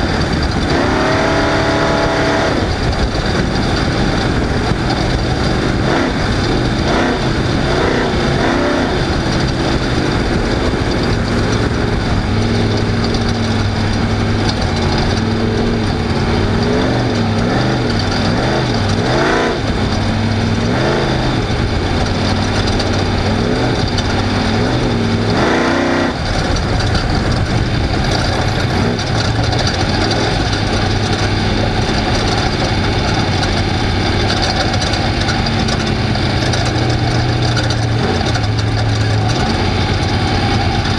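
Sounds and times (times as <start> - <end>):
race vehicle engine revving: 0.0 - 40.9
vehicle moving over rough ground: 0.0 - 40.9.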